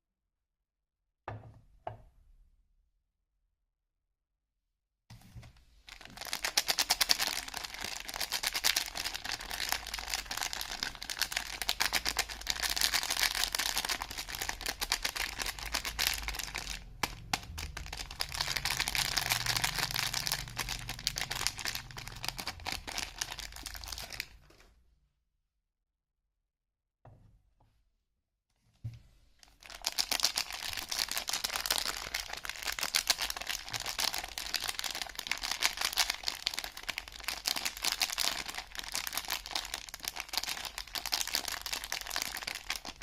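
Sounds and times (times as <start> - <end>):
packaging crinkling: 5.8 - 24.6, 29.4 - 43.0.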